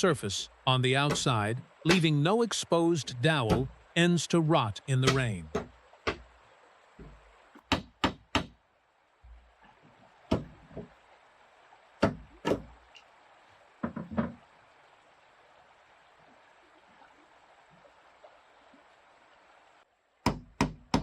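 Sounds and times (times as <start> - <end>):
mallet knocking wooden pegs: 1.0 - 2.2, 3.4 - 3.8, 5.0 - 6.3, 7.0 - 8.6, 10.3 - 10.9, 12.0 - 12.7, 20.3 - 21.0.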